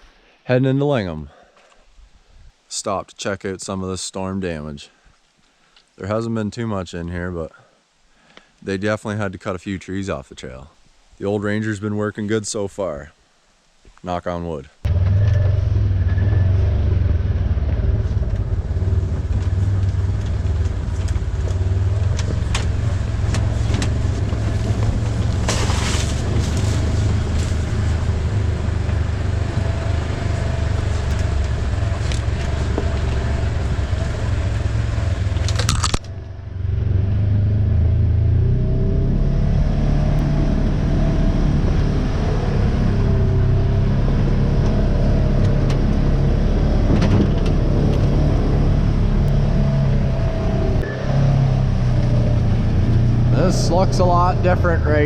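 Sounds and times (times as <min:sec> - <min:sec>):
vehicle engine running: 0:14.9 - 0:55.0.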